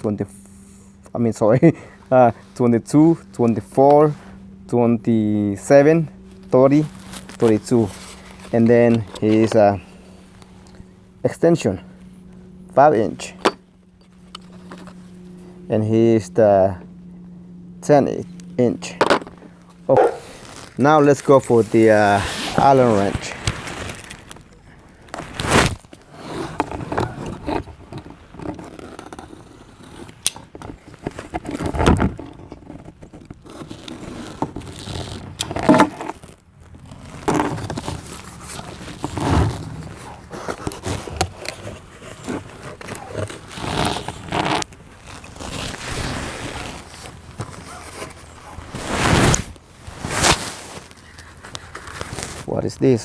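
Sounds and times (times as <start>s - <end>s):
cardboard and plastic scraping: 6.8s - 9.8s, 19.0s - 52.5s
sharp handling noises: 18.4s - 52.5s.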